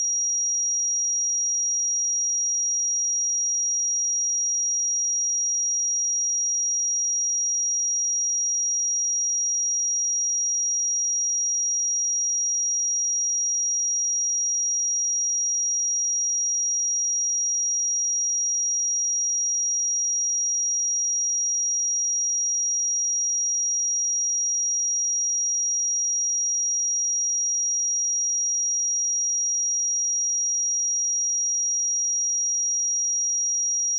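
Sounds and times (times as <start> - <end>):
high-pitched sine test tone: 0.0 - 6.9, 9.6 - 33.9.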